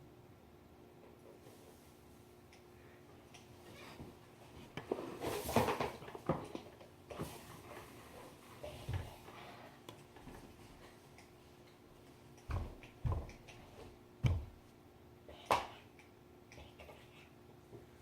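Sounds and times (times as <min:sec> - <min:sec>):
dull thumps: 0:12.5 - 0:13.6, 0:14.2 - 0:14.6.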